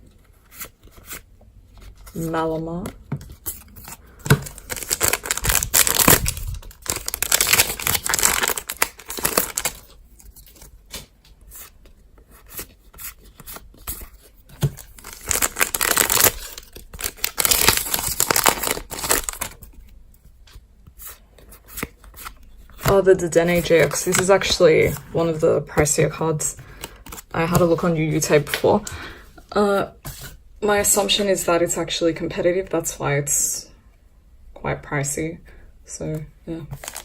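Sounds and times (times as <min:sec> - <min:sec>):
wrapper tearing and crinkling: 0:04.3 - 0:11.1, 0:14.6 - 0:19.7, 0:36.8 - 0:37.0.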